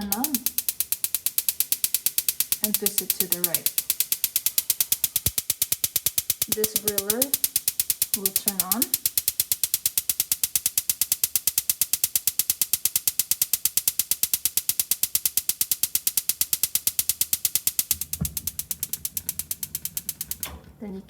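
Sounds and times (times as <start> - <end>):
gas burner low rumble: 0.0 - 5.5, 6.3 - 9.1, 17.0 - 21.0
spark igniter clicking: 0.0 - 20.8.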